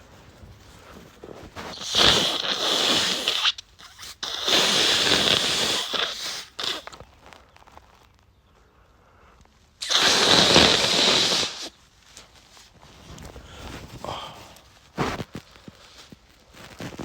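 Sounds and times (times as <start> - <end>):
man blowing his nose: 1.5 - 7.0, 9.8 - 11.8.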